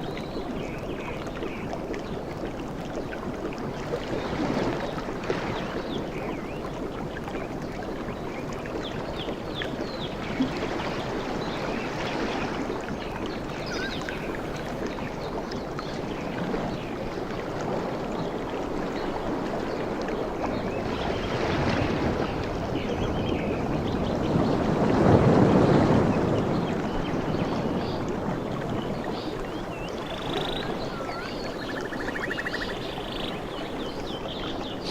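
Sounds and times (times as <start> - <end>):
surf washing onto beach: 21.4 - 34.9.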